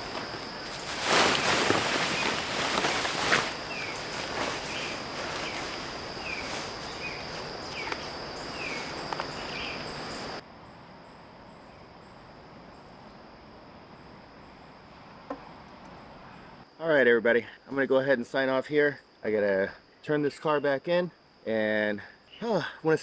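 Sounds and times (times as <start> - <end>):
high insect drone: 0.0 - 23.0.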